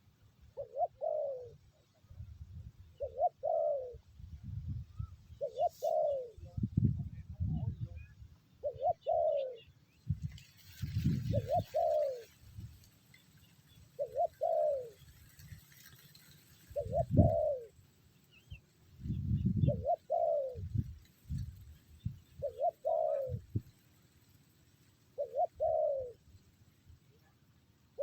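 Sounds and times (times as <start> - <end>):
dove cooing: 0.6 - 1.6, 2.9 - 4.0, 5.0 - 6.7, 8.6 - 9.7, 11.0 - 12.5, 13.9 - 15.4, 16.2 - 17.8, 19.2 - 20.8, 22.3 - 23.6, 25.2 - 26.2.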